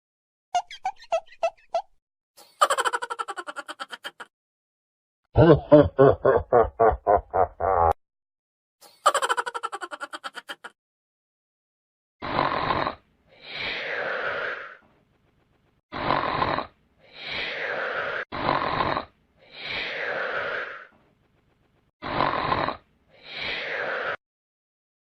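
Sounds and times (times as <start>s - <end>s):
comic snoring: 12.2s - 14.8s, 15.9s - 21.0s, 22.0s - 24.2s.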